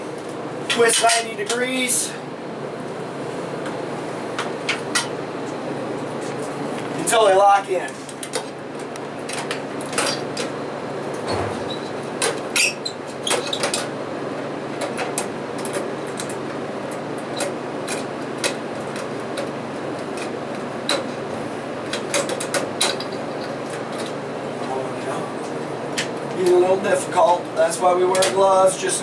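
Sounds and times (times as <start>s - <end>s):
steady low hum: 11.2s - 12.5s.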